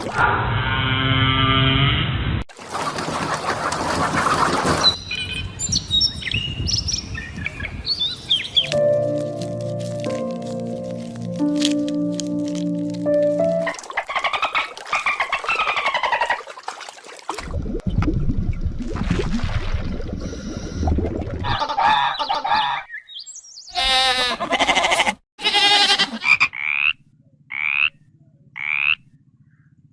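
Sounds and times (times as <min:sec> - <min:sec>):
animal calls: 0:13.6 - 0:16.4, 0:21.5 - 0:22.9, 0:23.7 - 0:28.0
frog croaking: 0:26.2 - 0:29.1.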